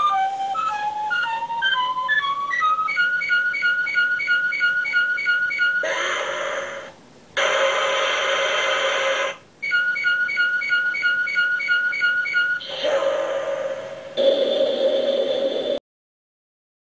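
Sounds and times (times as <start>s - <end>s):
toy hissing beam blasts: 5.8s - 9.4s
pulsing high beeps: 9.6s - 12.8s.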